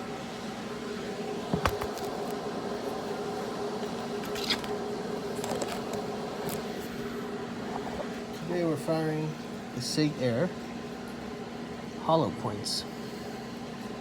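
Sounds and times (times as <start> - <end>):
low mechanical hum: 0.0 - 14.0.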